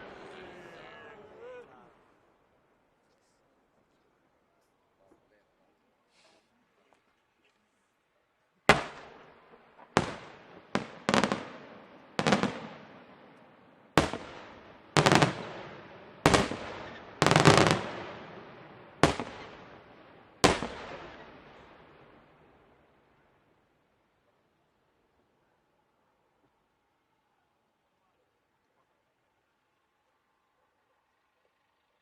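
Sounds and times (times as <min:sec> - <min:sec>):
fireworks bursting with bangs: 0:08.7 - 0:22.7.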